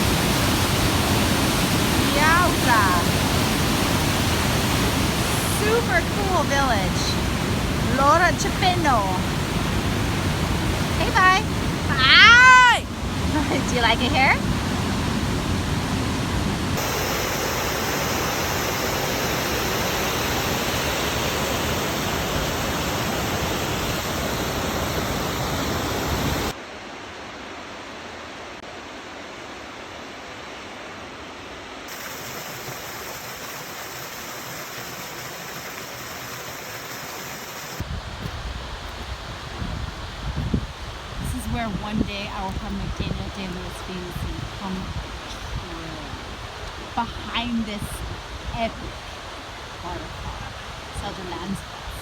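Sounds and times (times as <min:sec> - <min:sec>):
waterfall rushing: 0:00.0 - 0:26.6, 0:31.9 - 0:40.2.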